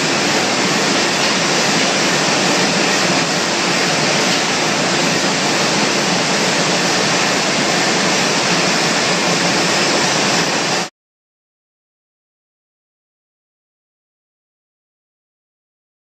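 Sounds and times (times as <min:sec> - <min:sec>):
conveyor belt pouring potatoes: 0:00.0 - 0:10.9.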